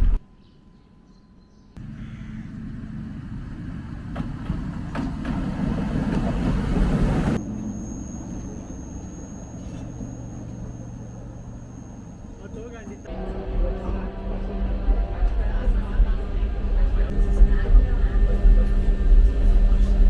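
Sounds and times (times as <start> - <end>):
vehicle rumbling: 1.8 - 20.0.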